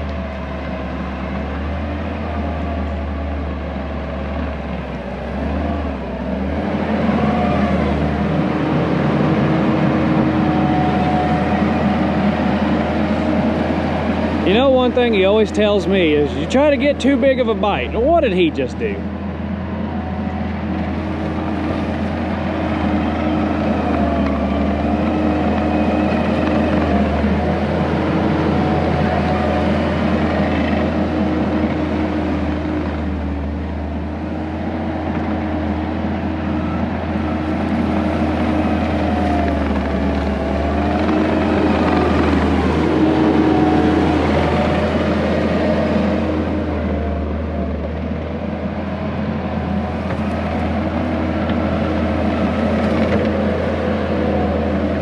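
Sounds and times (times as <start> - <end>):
diesel engine working: 0.0 - 55.0.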